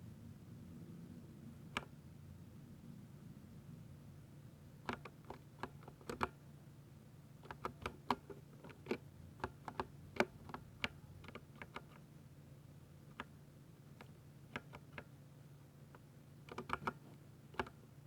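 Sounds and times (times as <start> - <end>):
low steady hum: 0.0 - 18.0
mechanical keyboard typing: 4.9 - 6.4, 7.4 - 12.0, 14.0 - 15.1, 16.4 - 17.0, 17.6 - 17.8.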